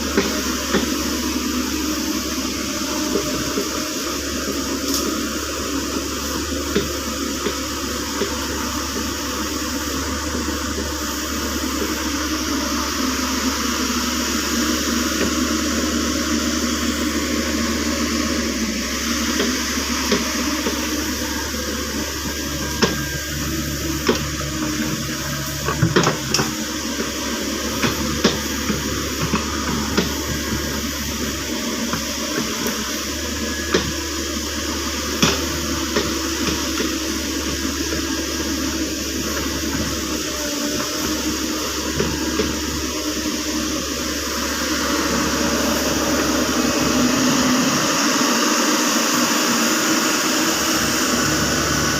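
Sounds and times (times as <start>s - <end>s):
mini excavator running: 0.0s - 51.9s.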